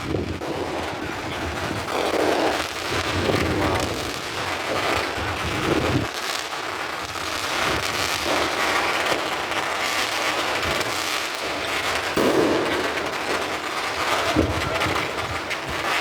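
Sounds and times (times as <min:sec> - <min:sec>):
fireworks crackling: 0:00.0 - 0:16.0
loud firework burst: 0:07.0 - 0:16.0.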